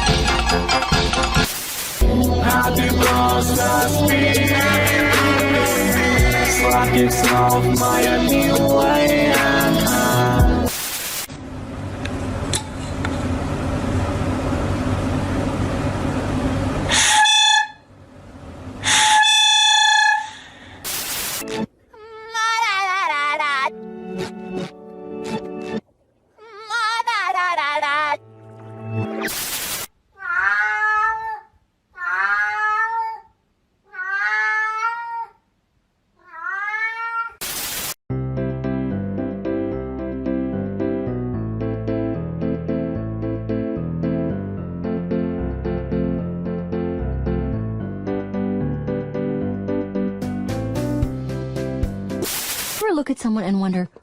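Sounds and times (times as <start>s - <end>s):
music: 0.0s - 10.7s, 23.7s - 25.8s, 28.2s - 29.2s, 38.1s - 52.3s
hiss: 1.5s - 2.0s, 10.7s - 11.3s, 20.8s - 21.4s, 29.3s - 29.9s, 37.4s - 38.0s, 52.2s - 52.8s
cat meowing: 30.1s - 35.4s, 36.2s - 37.4s.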